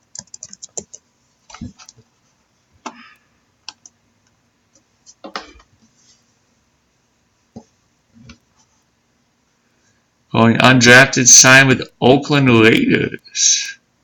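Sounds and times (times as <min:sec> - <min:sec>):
keyboard and mouse clicks: 0:00.1 - 0:02.0, 0:03.6 - 0:05.7.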